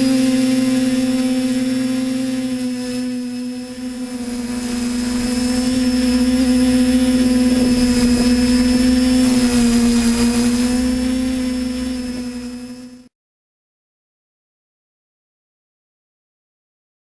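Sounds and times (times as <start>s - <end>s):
mechanical drone: 0.0s - 13.1s.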